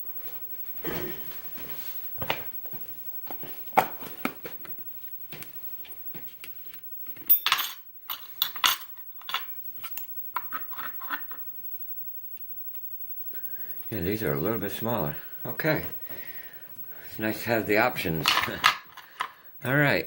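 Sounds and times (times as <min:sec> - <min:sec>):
small metal parts clinking: 0:07.2 - 0:11.4, 0:18.2 - 0:19.4.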